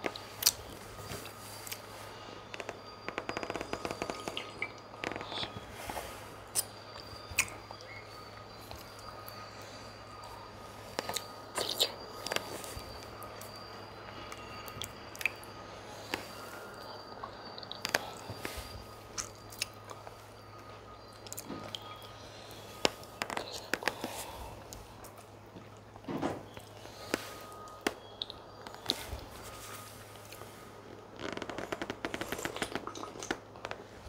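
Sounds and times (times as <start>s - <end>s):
faint low hum: 0.0s - 34.0s
close chewing and smacking: 32.2s - 33.5s.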